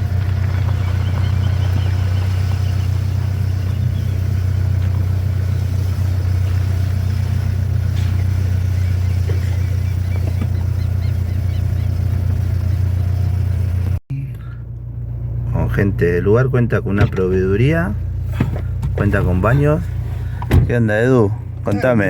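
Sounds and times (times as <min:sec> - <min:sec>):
car engine and road noise: 0:00.0 - 0:22.0.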